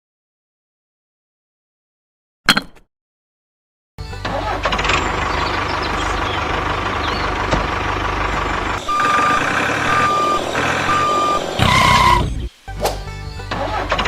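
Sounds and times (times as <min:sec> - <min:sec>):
truck engine running: 0:04.0 - 0:12.5
reversing alarm beeps: 0:08.8 - 0:12.3
short loud tone: 0:08.8 - 0:12.3.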